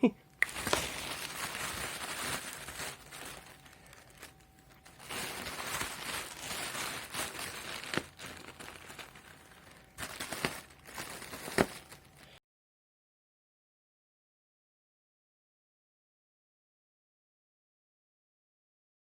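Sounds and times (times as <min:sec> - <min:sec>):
cats rustling and crinkling: 0:00.4 - 0:12.4.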